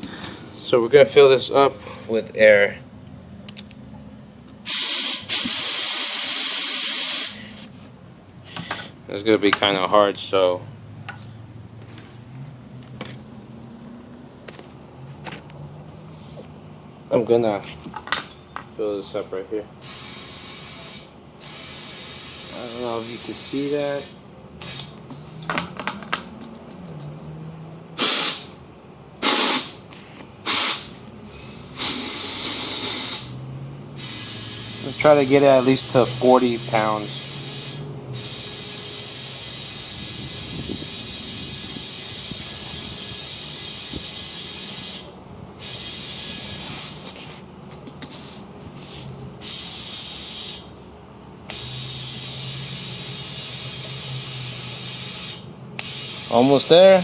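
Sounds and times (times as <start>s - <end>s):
compressed air hissing: 4.6s - 7.7s, 19.8s - 24.9s, 28.0s - 28.6s, 29.2s - 50.7s, 51.5s - 56.8s.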